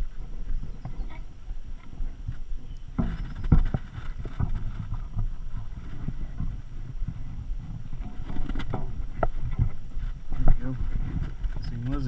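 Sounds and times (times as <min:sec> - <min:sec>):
wind rumble on microphone: 0:00.0 - 0:12.0
knocks and bumps on kayak: 0:02.9 - 0:09.8.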